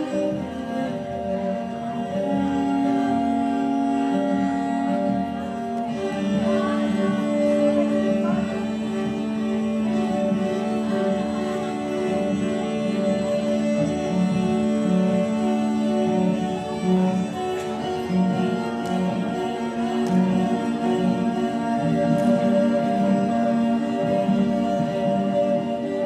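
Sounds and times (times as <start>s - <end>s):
bowed strings with held notes: 0.0s - 26.0s.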